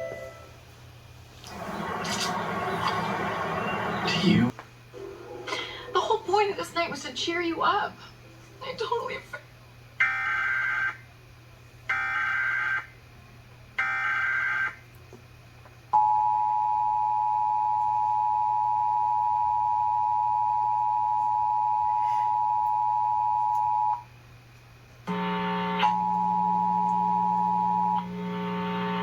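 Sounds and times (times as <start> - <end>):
low steady hum: 14.8 - 29.0
two-tone attention signal: 25.1 - 29.0.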